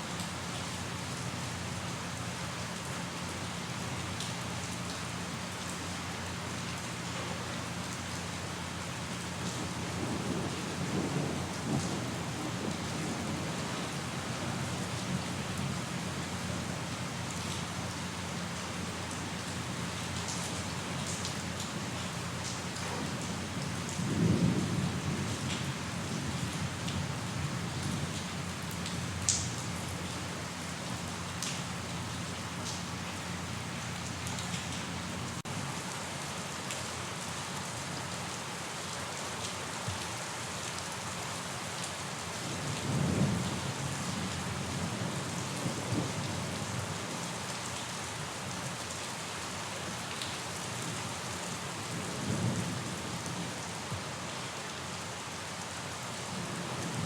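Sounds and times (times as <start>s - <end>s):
heavy rain falling: 0.0s - 57.0s
distant thunder rolling: 24.0s - 28.2s.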